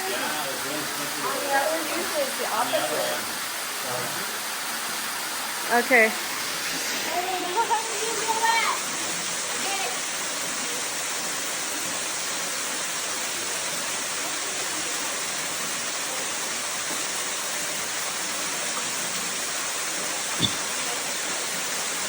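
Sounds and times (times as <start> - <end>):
waterfall pouring into pool: 0.0 - 22.0
short knock: 20.4 - 20.7.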